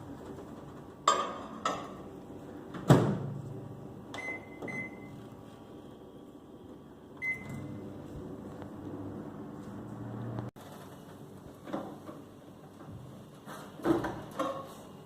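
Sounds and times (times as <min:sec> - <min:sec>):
microwave oven humming: 0:01.9 - 0:13.1.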